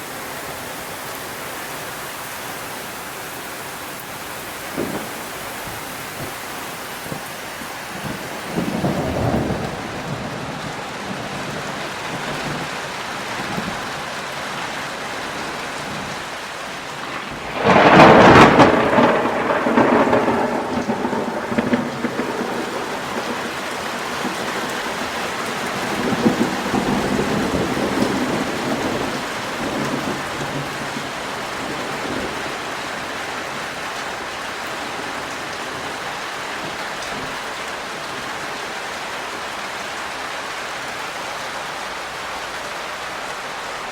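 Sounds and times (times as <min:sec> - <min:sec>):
heavy rain falling: 0:00.0 - 0:43.9
soft roll of thunder: 0:04.6 - 0:12.7, 0:17.0 - 0:33.1
loud thunderclap: 0:04.7 - 0:06.4, 0:07.0 - 0:11.7, 0:17.1 - 0:25.1.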